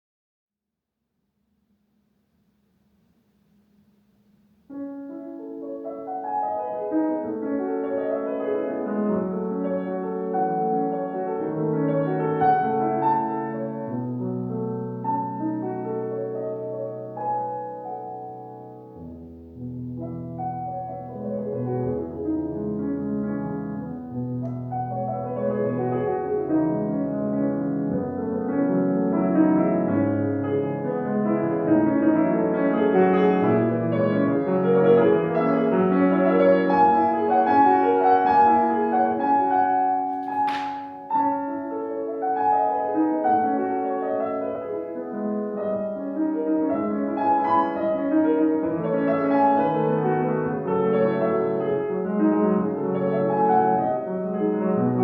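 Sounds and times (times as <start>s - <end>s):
classical piano music: 2.4s - 55.0s.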